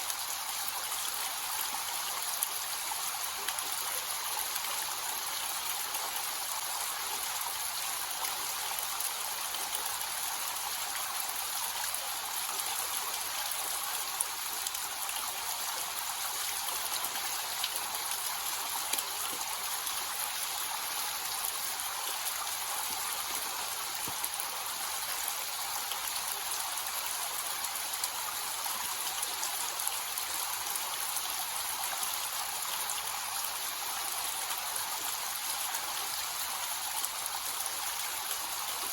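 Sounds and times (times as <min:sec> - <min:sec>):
small waterfall splashing: 0:00.0 - 0:38.9.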